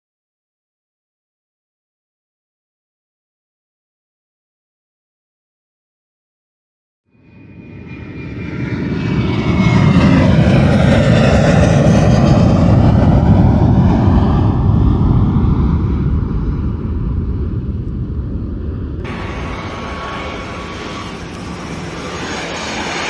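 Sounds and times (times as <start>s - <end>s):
airplane engine passing: 7.1s - 23.0s
whining tones gliding down: 19.0s - 23.0s.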